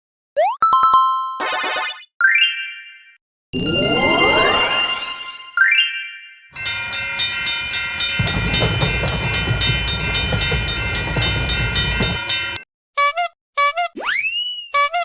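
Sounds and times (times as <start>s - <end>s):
cartoon sound effects: 0.4s - 2.4s, 3.6s - 5.9s, 13.0s - 15.0s
railroad crossing bell ringing: 3.6s - 12.6s
train rumbling past: 6.6s - 12.6s
train wheels clickety-clack: 6.6s - 12.6s.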